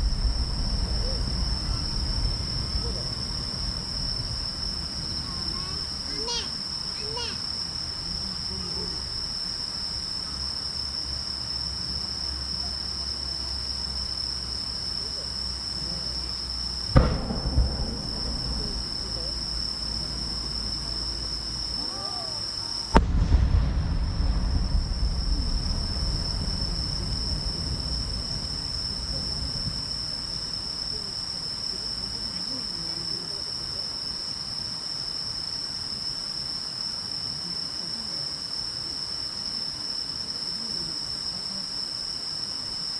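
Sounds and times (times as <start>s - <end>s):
crickets chirring: 0.0s - 42.9s
firework shells exploding: 22.9s - 31.0s.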